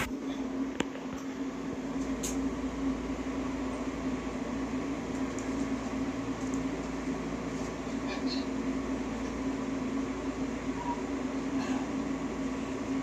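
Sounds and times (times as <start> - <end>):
machine whirring hum: 0.0 - 13.0.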